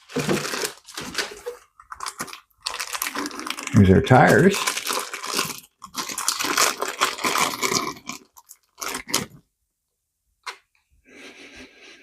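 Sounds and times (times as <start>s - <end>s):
plastic bag crinkling: 0.0s - 9.4s.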